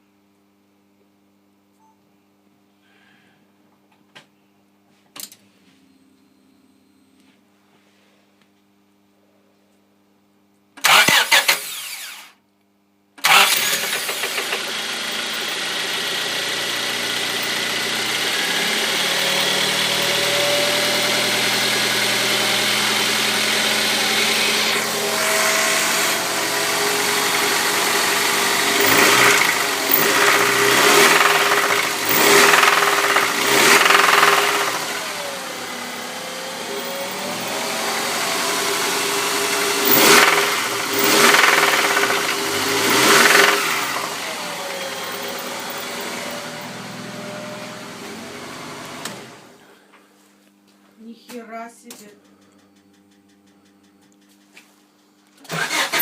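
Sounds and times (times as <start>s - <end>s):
car engine starting and idling: 10.8s - 12.3s, 13.2s - 49.6s, 55.4s - 56.0s
engine revving: 10.8s - 12.3s, 13.2s - 49.7s, 55.5s - 56.0s.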